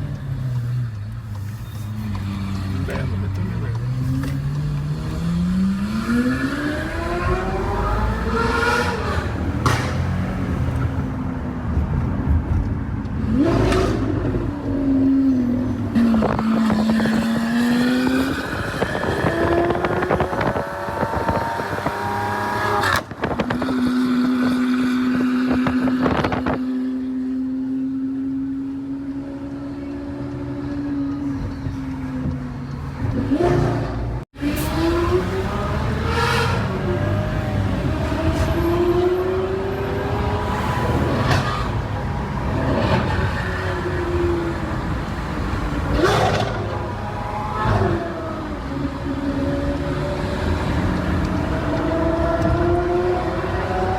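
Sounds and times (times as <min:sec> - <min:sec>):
sports car engine revving: 0:13.2 - 0:31.5, 0:33.0 - 0:53.9.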